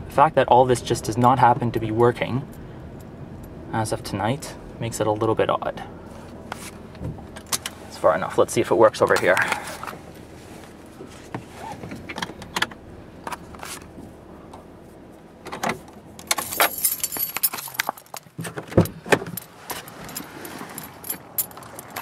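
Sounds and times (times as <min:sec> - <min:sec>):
car keys jangling: 0:15.5 - 0:22.0.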